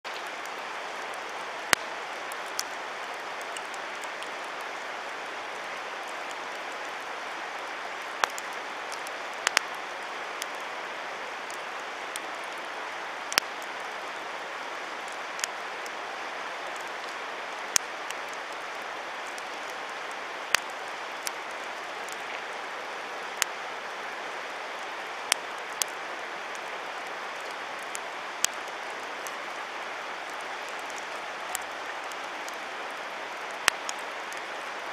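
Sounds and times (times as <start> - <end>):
campfire pops and cracks: 0.1 - 4.6, 8.0 - 9.8, 13.3 - 13.6, 17.6 - 18.4, 20.5 - 22.5, 25.2 - 26.6, 27.4 - 29.4, 33.5 - 34.5.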